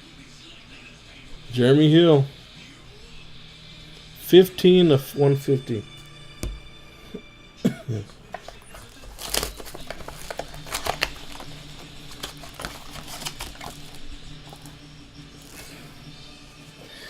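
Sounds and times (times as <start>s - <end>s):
clicks and rustling of card packaging: 8.3s - 14.8s.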